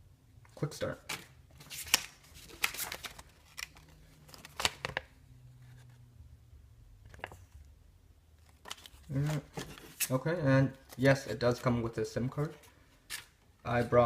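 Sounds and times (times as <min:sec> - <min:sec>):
cardboard packaging rustling: 0:01.1 - 0:06.0.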